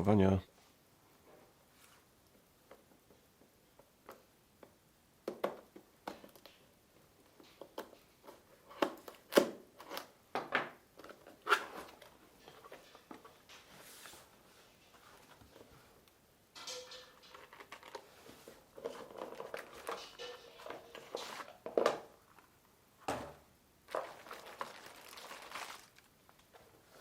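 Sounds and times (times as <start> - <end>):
sliding rustling hiss: 12.6 - 16.0.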